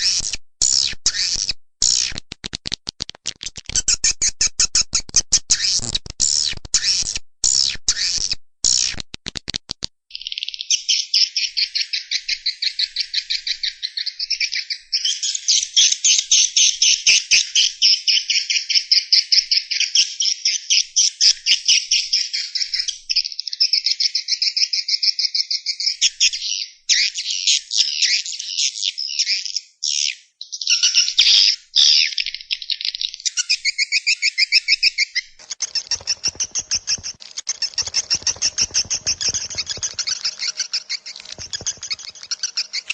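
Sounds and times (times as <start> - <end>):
sharp clicks: 35.4 - 42.9
swiftlets twittering: 35.4 - 42.9.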